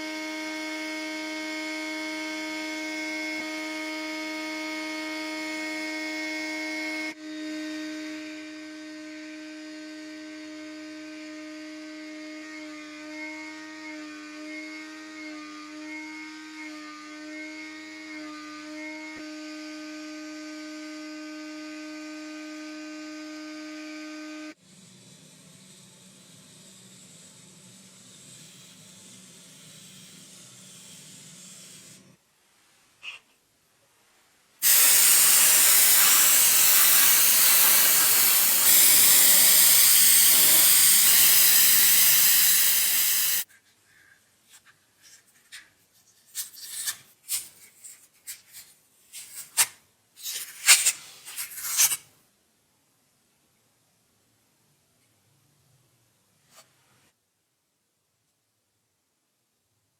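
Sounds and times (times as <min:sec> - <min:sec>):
loud steady hiss: 0:34.6 - 0:43.5.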